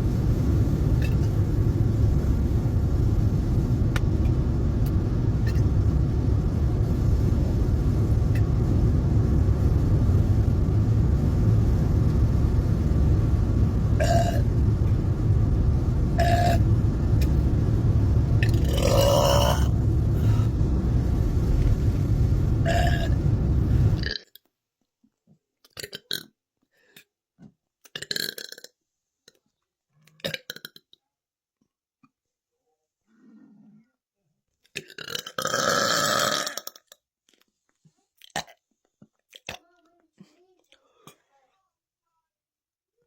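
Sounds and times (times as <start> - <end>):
loud low rumble: 0.0 - 24.1.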